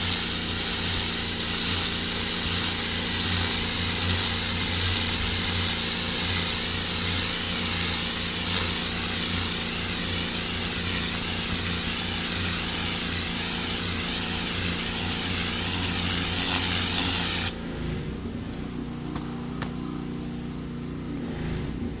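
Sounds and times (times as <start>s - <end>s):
motor humming: 0.0s - 17.6s
pressure washer spraying concrete: 0.0s - 17.6s.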